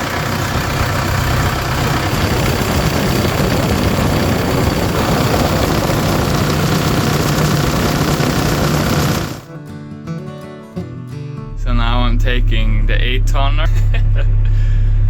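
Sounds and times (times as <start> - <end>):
excavator engine rumbling: 0.0 - 9.5.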